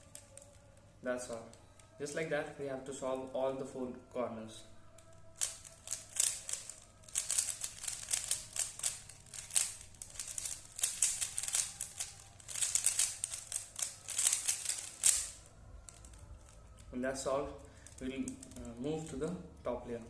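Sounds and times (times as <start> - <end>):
puzzle cube clicking: 5.0 - 16.9.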